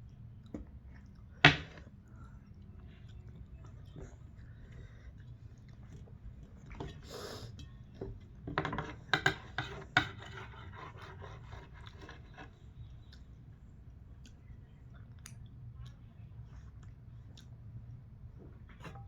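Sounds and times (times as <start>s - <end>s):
steady low hum: 0.0s - 19.0s
dishes and cutlery clinking: 6.6s - 12.5s.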